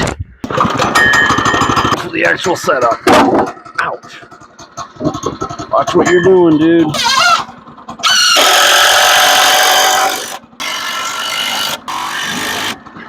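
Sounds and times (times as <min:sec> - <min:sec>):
chainsaw revving and cutting wood: 0:06.9 - 0:13.0.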